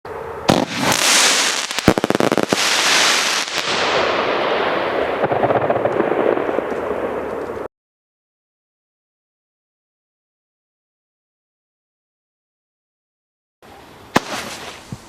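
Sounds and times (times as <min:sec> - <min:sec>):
firework hissing: 0:00.5 - 0:04.8
firework bangs: 0:00.5 - 0:07.4, 0:14.1 - 0:14.8
crackling pops: 0:01.6 - 0:02.7.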